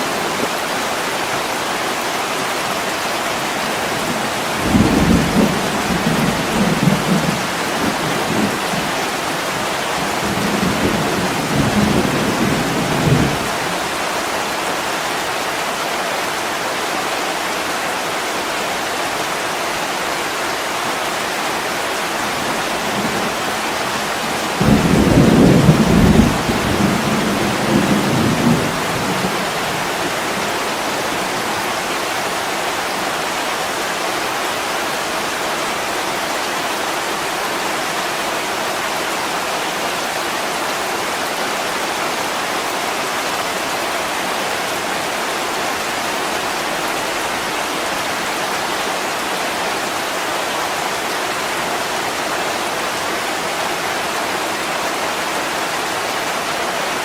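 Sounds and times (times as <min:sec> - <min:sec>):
heavy rain on window glass: 0:00.0 - 0:18.5, 0:19.2 - 0:57.0
low rumble of thunder: 0:22.9 - 0:30.0.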